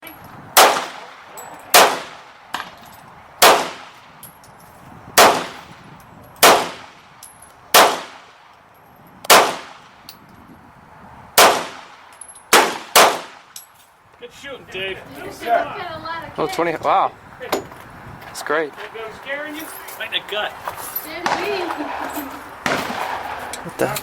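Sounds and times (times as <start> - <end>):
gunshots with echo: 0.6 - 2.4, 3.4 - 3.9, 5.2 - 5.6, 6.4 - 7.0, 7.7 - 8.3, 9.3 - 9.8, 11.4 - 13.5, 22.6 - 23.6.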